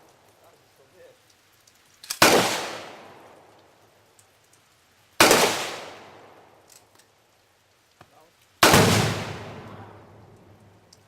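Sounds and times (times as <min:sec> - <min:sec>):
loud explosive bangs: 0:08.6 - 0:10.3.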